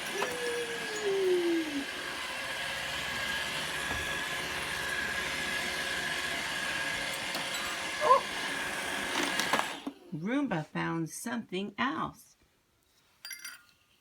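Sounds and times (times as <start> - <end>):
robot vacuum whirring: 0.0 - 10.1.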